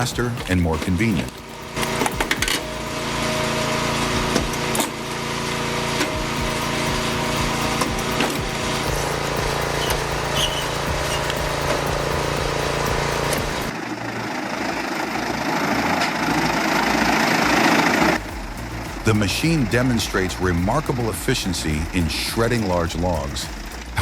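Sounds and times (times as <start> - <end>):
knocks and clicks: 0.0 - 2.9, 6.0 - 13.7
machine engine running: 0.0 - 24.0
rough machine noise: 0.0 - 24.0.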